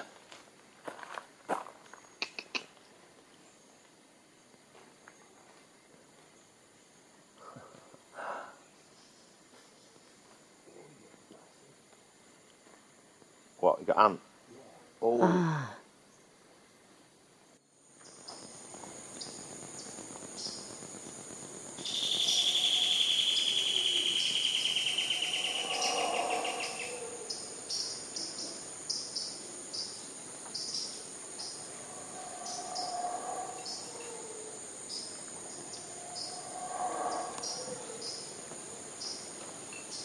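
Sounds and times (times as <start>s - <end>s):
short insect chirps: 17.8s - 40.0s
high-pitched insect drone: 18.0s - 40.0s
buzzing insect call sliding down: 18.3s - 27.5s, 31.3s - 38.4s.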